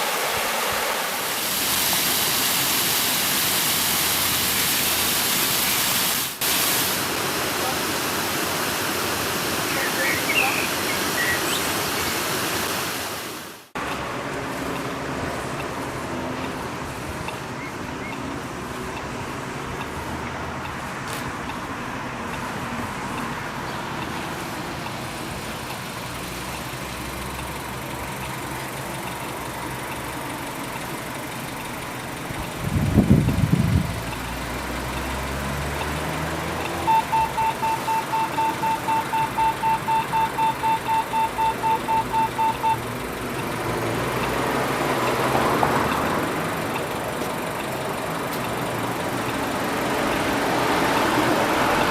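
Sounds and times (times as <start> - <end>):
street traffic: 0.0 - 51.9
vehicle noise: 0.0 - 51.9
pedestrian signal beeping: 9.7 - 11.7, 17.2 - 18.3, 35.8 - 43.6.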